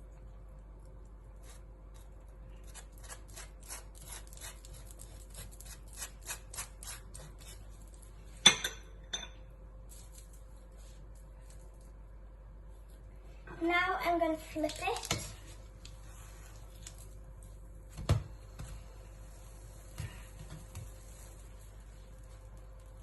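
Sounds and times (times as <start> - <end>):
knife scraping across bread: 1.4 - 7.9.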